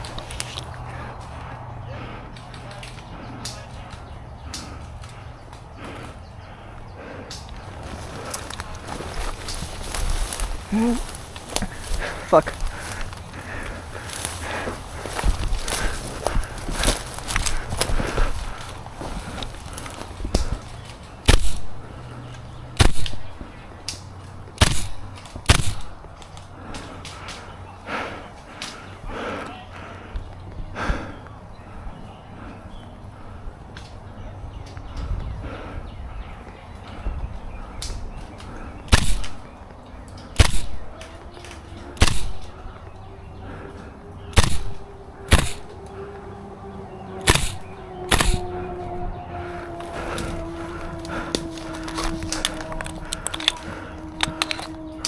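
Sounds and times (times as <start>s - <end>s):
airsoft gun shots: 24.6s - 25.9s, 38.9s - 39.4s, 40.4s - 40.8s, 42.0s - 42.5s, 44.4s - 45.7s, 47.3s - 48.5s.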